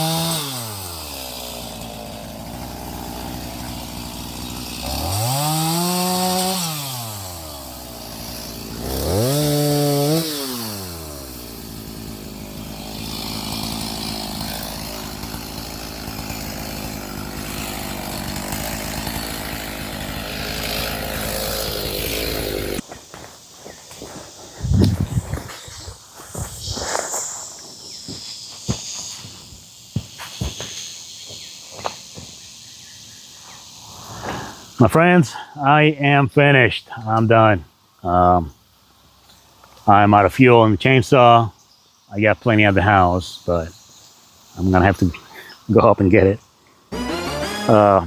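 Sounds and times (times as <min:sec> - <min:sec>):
chainsaw engine revving and idling: 0:00.0 - 0:22.8, 0:42.4 - 0:43.8, 0:44.5 - 0:48.0.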